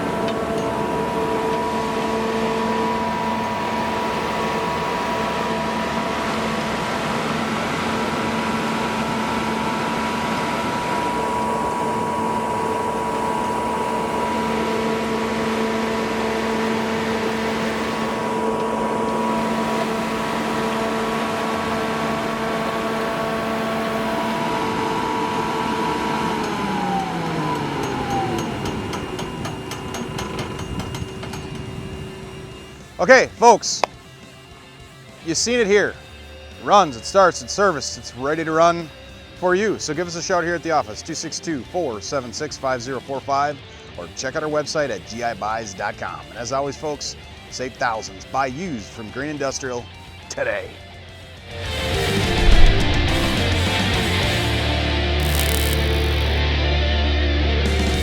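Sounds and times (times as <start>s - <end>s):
engine winding down: 0.0s - 33.0s
generator engine running: 0.0s - 34.2s.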